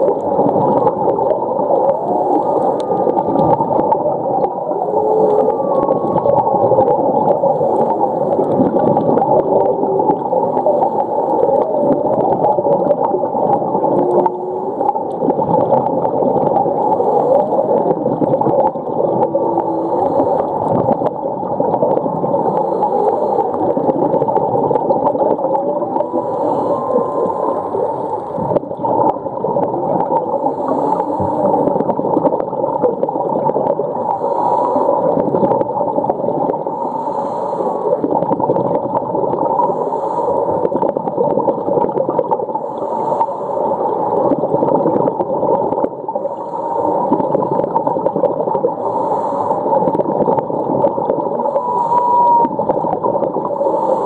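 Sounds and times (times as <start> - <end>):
whale calls underwater: 0.0 - 20.6, 22.4 - 28.4, 51.1 - 54.0
underwater rush: 0.0 - 54.0.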